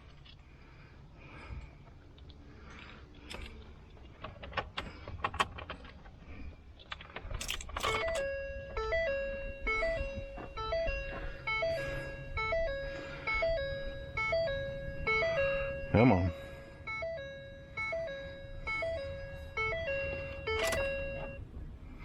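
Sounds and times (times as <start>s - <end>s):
keys jangling: 6.8s - 8.8s, 20.1s - 21.4s
electronic warning chime: 7.9s - 21.4s.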